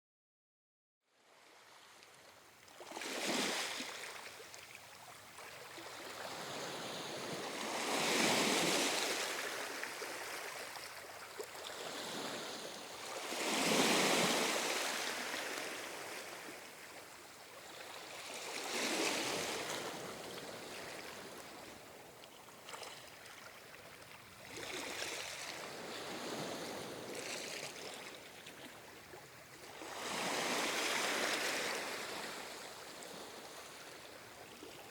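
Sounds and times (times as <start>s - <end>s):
ocean waves washing ashore: 6.1s - 11.0s, 29.8s - 34.2s.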